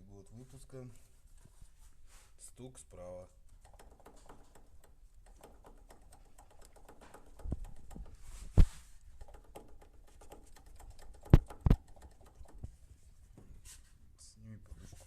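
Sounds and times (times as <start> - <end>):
fast faint ticking: 3.6 - 8.3, 9.1 - 12.8.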